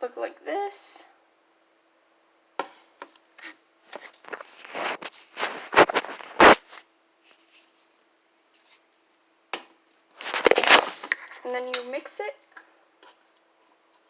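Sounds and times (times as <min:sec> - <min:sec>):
dishes rubbing and scraping: 0:03.4 - 0:06.8, 0:10.2 - 0:11.5.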